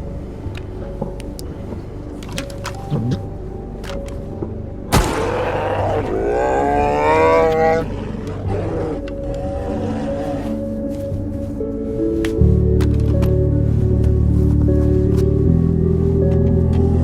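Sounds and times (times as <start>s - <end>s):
background music score: 0.0s - 17.0s
sharp gunshot-like crack: 4.9s - 5.4s
bear roaring: 4.9s - 10.9s.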